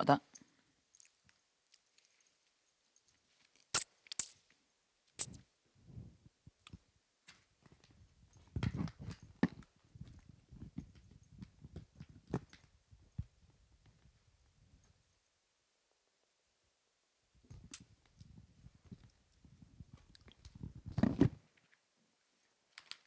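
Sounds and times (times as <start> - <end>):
person chewing: 4.1 - 4.4
sharp clicks: 5.2 - 5.4.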